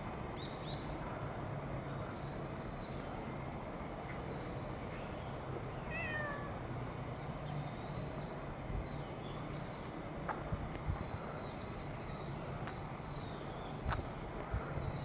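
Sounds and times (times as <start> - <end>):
cat meowing: 5.8 - 6.6.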